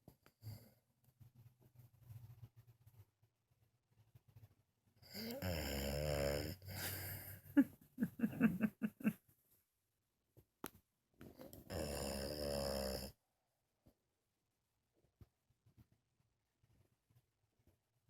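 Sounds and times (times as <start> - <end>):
dog snoring and snorting: 5.0 - 7.1, 11.6 - 13.2.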